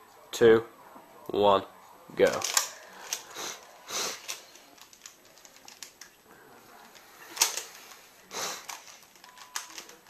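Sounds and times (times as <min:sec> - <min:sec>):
puzzle cube clicking: 0:04.1 - 0:06.2, 0:06.9 - 0:10.0.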